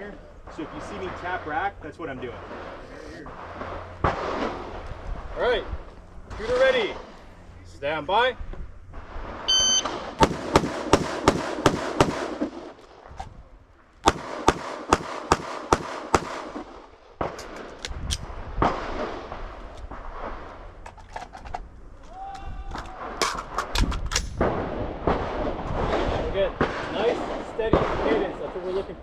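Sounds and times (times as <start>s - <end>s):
rifle shots: 9.5s - 12.8s, 14.0s - 17.8s
pistol shots: 9.8s - 12.7s, 14.0s - 17.7s
faint scattered gunshots: 9.8s - 12.8s, 14.0s - 17.7s, 24.4s - 28.5s.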